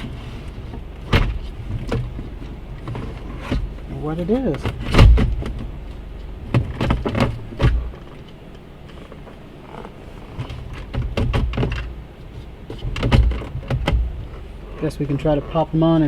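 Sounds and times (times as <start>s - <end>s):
steady low hum: 0.0s - 16.0s
plastic parts knocking and rattling: 10.4s - 14.5s.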